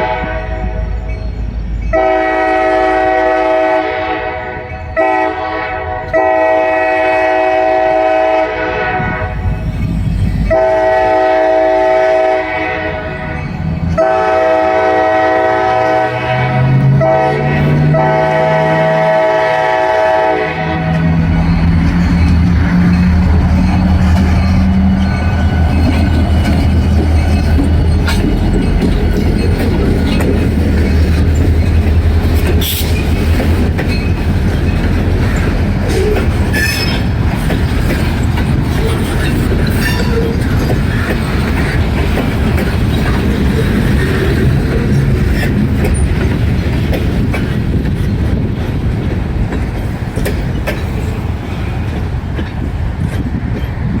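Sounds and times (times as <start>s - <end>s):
train wheel squeals: 0.0s - 2.9s, 4.4s - 5.1s, 9.3s - 11.2s, 13.0s - 14.0s, 20.8s - 41.8s
diesel locomotive engine drone: 0.0s - 54.0s
train wheels clacking over rail joints: 19.7s - 54.0s.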